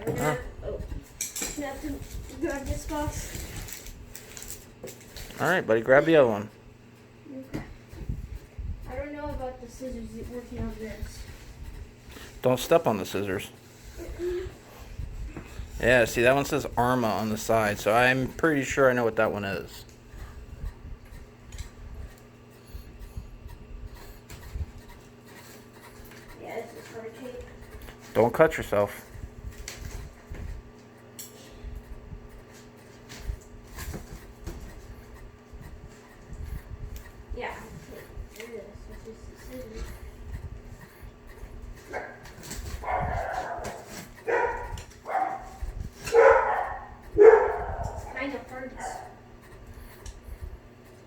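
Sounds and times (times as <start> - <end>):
steady low hum: 0.0 - 51.0
dog barking: 41.9 - 48.2.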